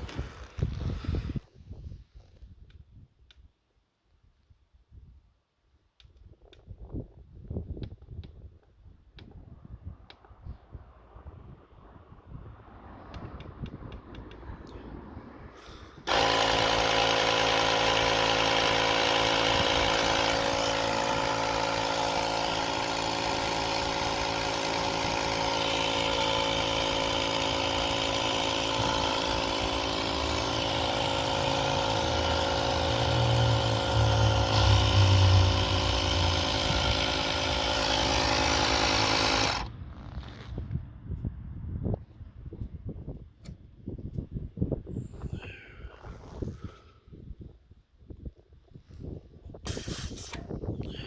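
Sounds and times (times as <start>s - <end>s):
air inflator running: 15.6s - 40.5s, 49.7s - 51.0s.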